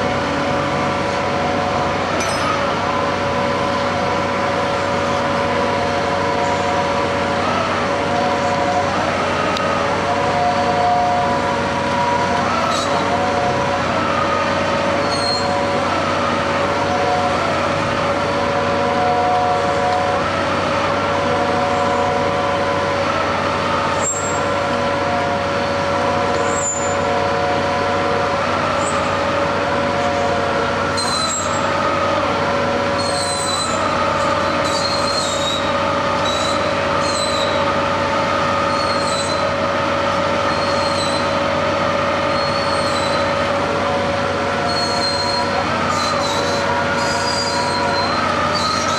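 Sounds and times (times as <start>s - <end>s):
heavy machinery droning hum: 0.0s - 48.9s
high metallic squeals: 15.0s - 15.7s, 25.6s - 27.1s, 30.9s - 31.7s, 32.9s - 37.6s, 38.7s - 39.5s, 40.5s - 41.4s, 42.2s - 43.4s, 44.6s - 48.9s.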